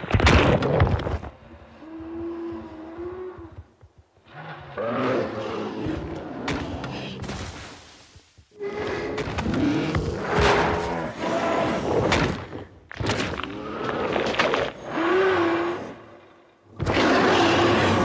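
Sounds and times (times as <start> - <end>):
dinosaur roaring: 13.4 - 18.0.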